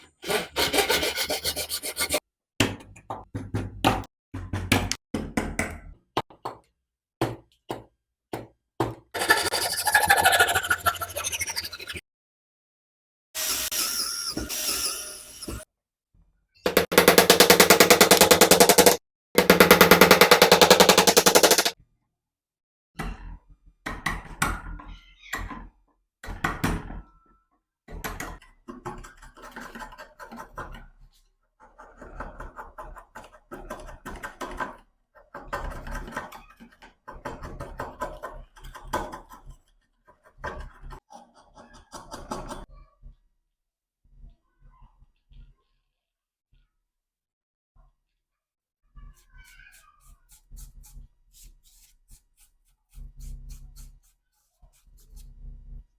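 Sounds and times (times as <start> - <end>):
irregular knocks and taps: 2.6 - 9.1, 16.7 - 21.8
power tool buzzing: 13.4 - 15.6.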